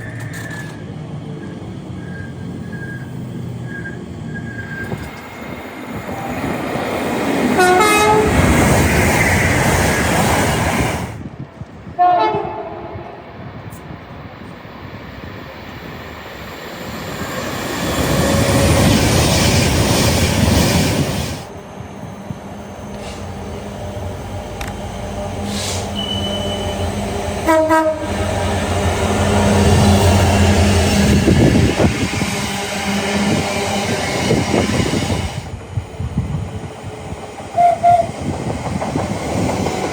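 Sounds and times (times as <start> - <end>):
trains rushing past: 0.0 - 39.9
train horn blast: 7.5 - 8.5, 12.0 - 13.2, 25.4 - 28.6, 32.3 - 34.4.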